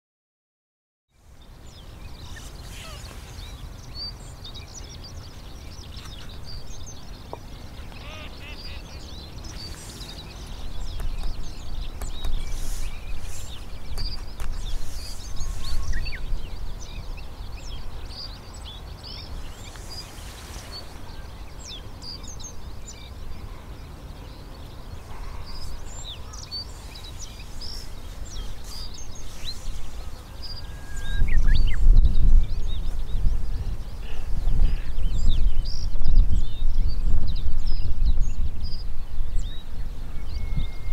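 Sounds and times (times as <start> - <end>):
songbirds chirping: 1.1 - 40.9.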